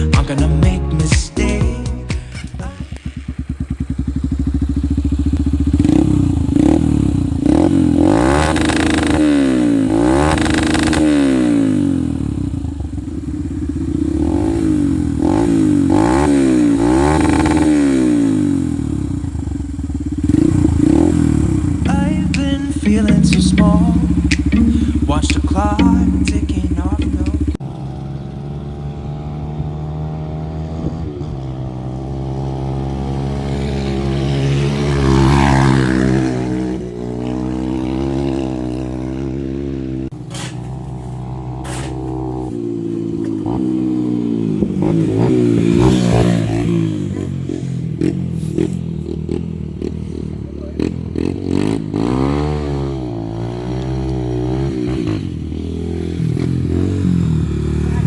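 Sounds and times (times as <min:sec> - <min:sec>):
motorcycle engine revving: 0:02.2 - 0:58.0
sharp clicks: 0:22.3 - 0:27.4.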